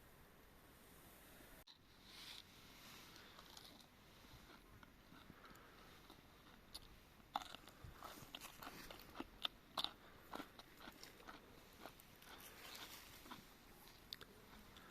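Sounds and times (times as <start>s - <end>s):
crunchy food chewing: 3.1s - 14.9s.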